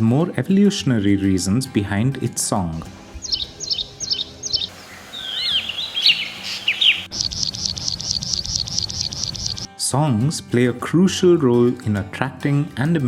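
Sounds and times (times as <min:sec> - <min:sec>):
songbird singing: 0:03.1 - 0:09.7.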